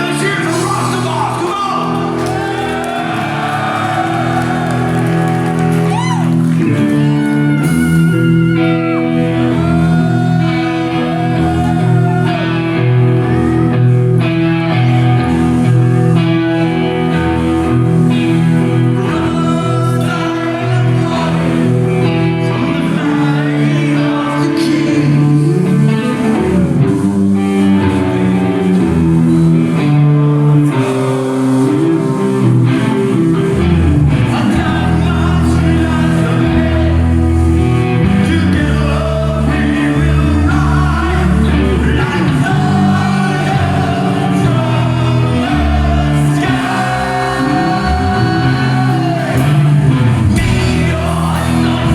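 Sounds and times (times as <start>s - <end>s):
bass and drums: 0.0s - 20.2s, 31.9s - 51.9s
distorted electric guitar: 0.0s - 51.9s
sung vocals: 0.0s - 51.9s.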